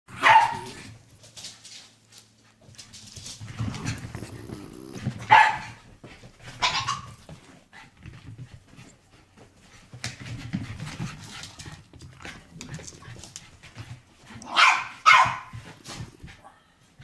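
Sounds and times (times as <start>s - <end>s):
dog barking: 0.1s - 0.8s, 5.2s - 5.8s, 6.6s - 7.1s, 14.4s - 15.5s.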